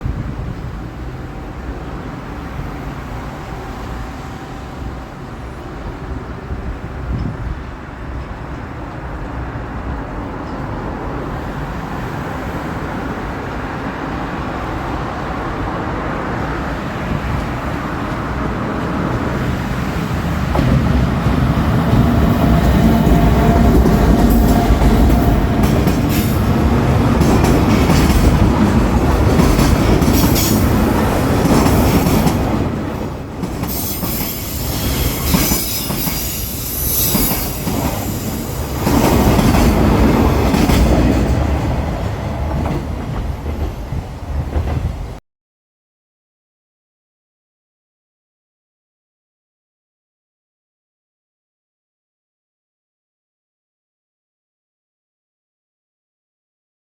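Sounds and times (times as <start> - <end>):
wheels clacking over rail joints: 17.2 - 45.2
electric locomotive running: 17.3 - 45.2.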